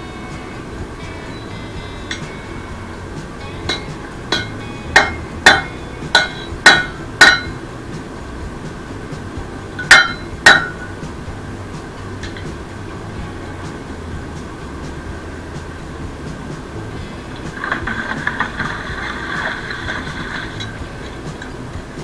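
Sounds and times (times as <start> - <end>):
hammer striking metal on anvil: 2.0 - 2.7, 3.4 - 7.6, 9.8 - 11.0.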